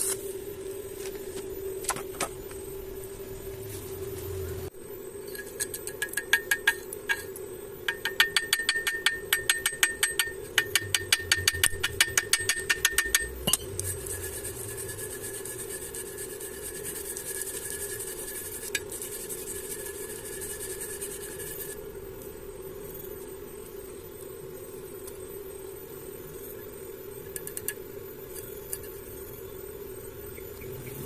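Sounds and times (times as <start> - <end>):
steady high hiss: 0.0 - 31.0
steady low hum: 0.0 - 31.0
metal-on-metal tapping: 5.4 - 7.3, 7.9 - 13.9.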